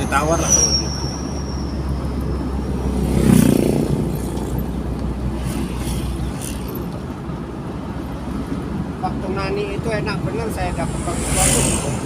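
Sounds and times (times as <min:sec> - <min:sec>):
car engine: 0:00.0 - 0:12.0
road noise: 0:00.0 - 0:12.0.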